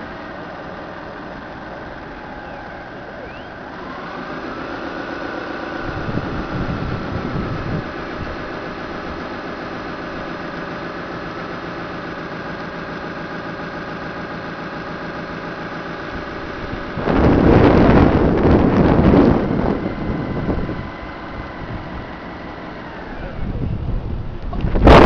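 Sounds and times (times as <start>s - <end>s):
engine drone: 0.0s - 25.0s
wind buffeting microphone: 5.8s - 9.3s, 16.2s - 25.0s.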